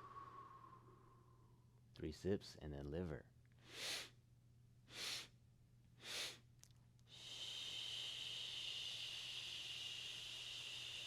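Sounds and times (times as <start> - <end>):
long exhaled shh: 0.0 - 1.3, 3.7 - 4.1, 4.9 - 5.3, 6.0 - 6.4, 7.1 - 11.0
sipping inhales through mouth: 4.9 - 5.3, 6.0 - 6.4.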